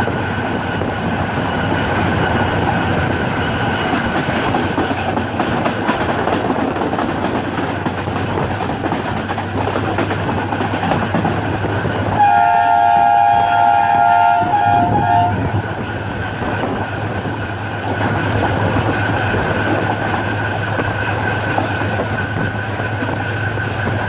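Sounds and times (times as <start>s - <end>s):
train rumble and wheel clatter: 0.0s - 24.0s
multi-tone train horn: 12.1s - 15.7s.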